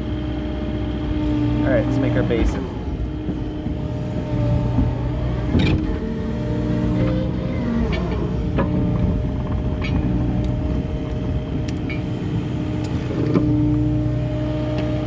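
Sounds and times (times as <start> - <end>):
excavator diesel engine running: 0.0 - 15.0.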